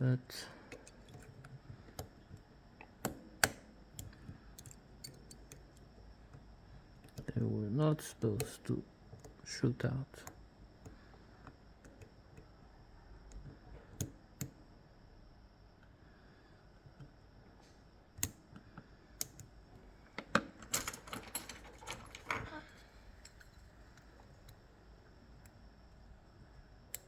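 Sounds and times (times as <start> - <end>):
small metal parts clicking: 3.0 - 6.4, 20.1 - 24.6.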